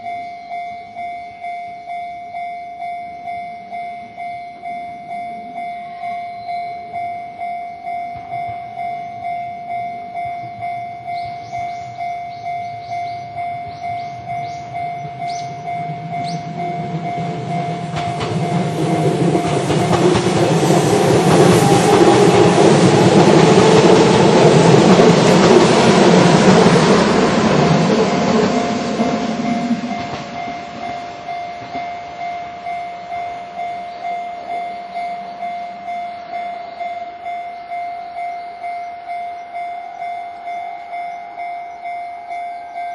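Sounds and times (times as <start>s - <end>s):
level-crossing warning bell: 0.0s - 42.9s
train wheels rumbling on rails: 0.0s - 42.9s.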